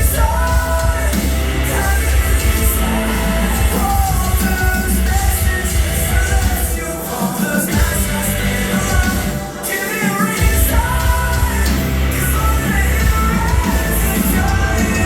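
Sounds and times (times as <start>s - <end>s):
heavy bass: 0.0s - 9.7s, 10.4s - 15.0s
person singing: 0.0s - 15.0s
rock band playing live: 0.0s - 15.0s.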